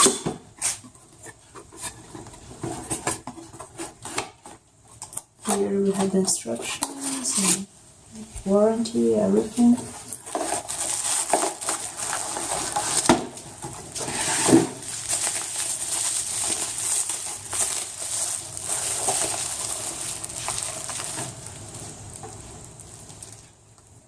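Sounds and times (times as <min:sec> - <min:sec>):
packaging rustling and crinkling: 0:09.2 - 0:23.6.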